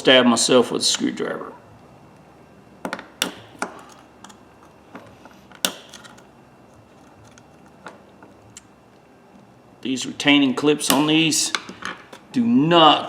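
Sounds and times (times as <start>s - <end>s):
screwdriver clicking on metal: 3.2s - 4.8s, 5.5s - 8.6s.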